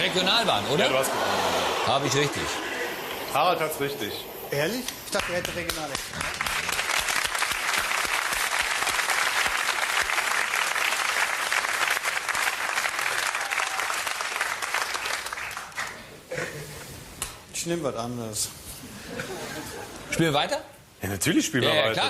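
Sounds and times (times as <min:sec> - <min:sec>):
audience applauding: 0:00.0 - 0:16.1.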